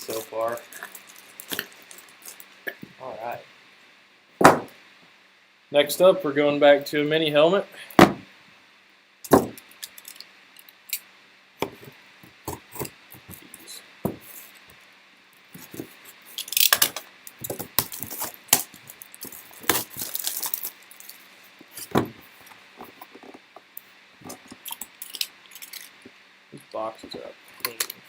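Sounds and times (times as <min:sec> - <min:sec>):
packaging rustling: 0:00.0 - 0:02.6, 0:15.6 - 0:21.9.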